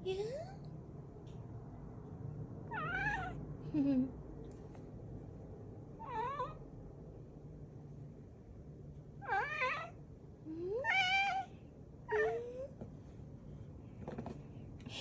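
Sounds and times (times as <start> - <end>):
cat meowing: 2.7 - 3.4, 9.2 - 10.0.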